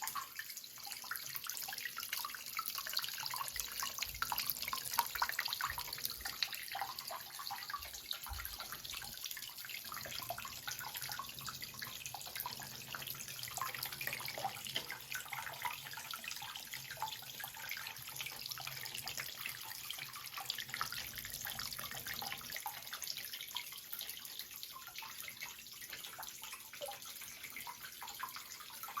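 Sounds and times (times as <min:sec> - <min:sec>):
water trickling and splashing: 0:00.0 - 0:29.0.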